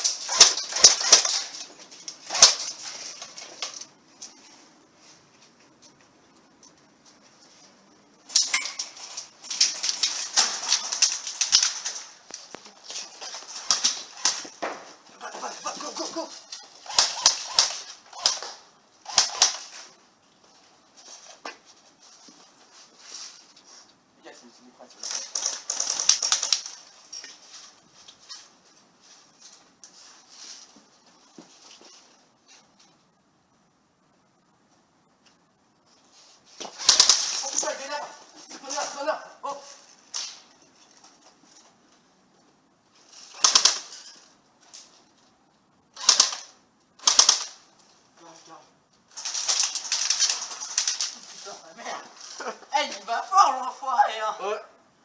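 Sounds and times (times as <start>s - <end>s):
airsoft gun shots: 0.0s - 1.5s, 2.3s - 2.7s, 16.8s - 19.7s, 43.4s - 43.9s, 46.0s - 47.6s.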